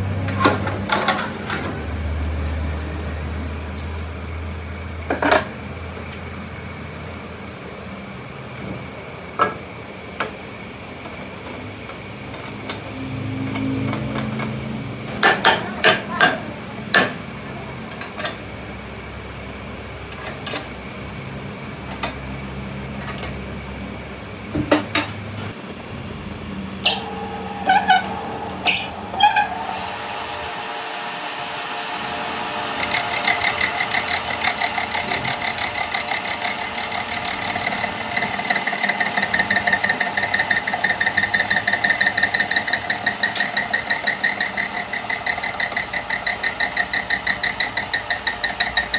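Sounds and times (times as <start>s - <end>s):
machine pulsing whine: 25.9s - 34.8s.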